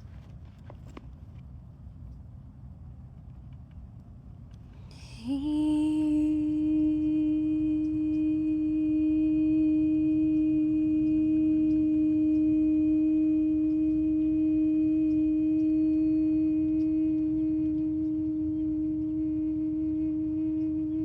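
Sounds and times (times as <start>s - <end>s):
singing bowl low tone: 4.9s - 21.0s.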